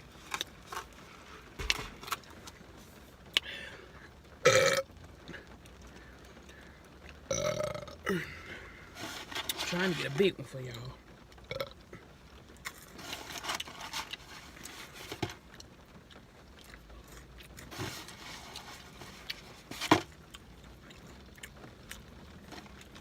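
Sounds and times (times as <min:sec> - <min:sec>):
person chewing: 0:12.6 - 0:23.0.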